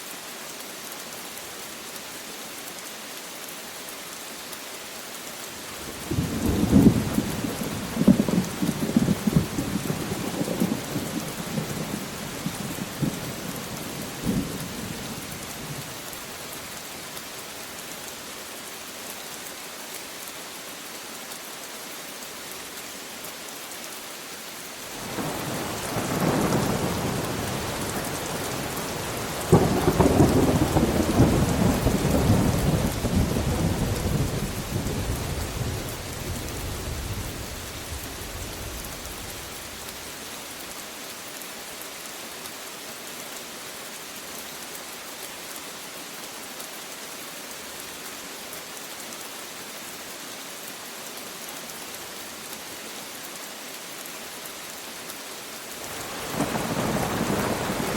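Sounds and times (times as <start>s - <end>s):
steady rain hiss: 0.0s - 57.9s
thunder crack and rumble: 6.1s - 11.7s, 25.1s - 39.5s.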